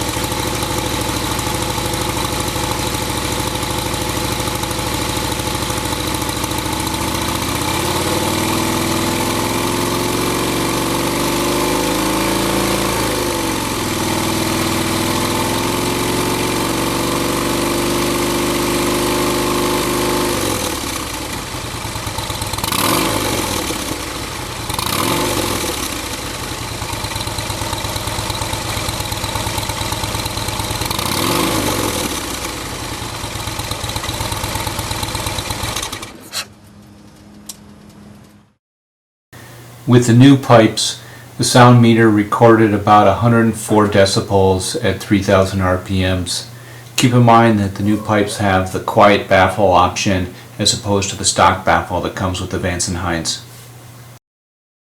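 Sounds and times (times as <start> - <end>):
motorcycle engine revving: 0.0 - 37.2.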